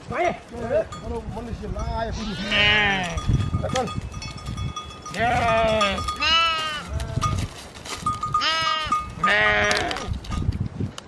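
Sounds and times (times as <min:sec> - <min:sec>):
sheep bleating: 0:02.1 - 0:03.2, 0:05.1 - 0:07.3, 0:08.4 - 0:10.1.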